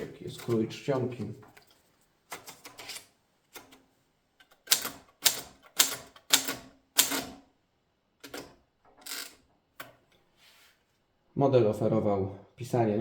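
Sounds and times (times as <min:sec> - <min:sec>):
typewriter typebar strikes: 0:04.7 - 0:07.4.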